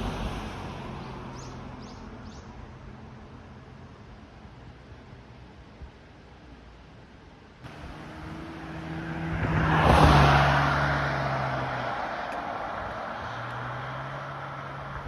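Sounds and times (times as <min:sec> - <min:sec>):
vehicle passing by: 0:07.7 - 0:15.0.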